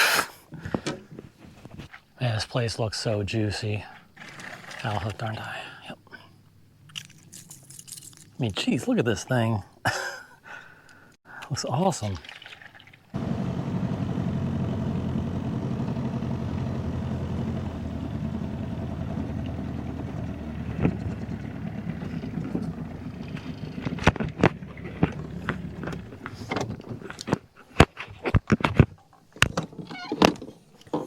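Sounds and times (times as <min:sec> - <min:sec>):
boat motor running: 0:13.2 - 0:26.5.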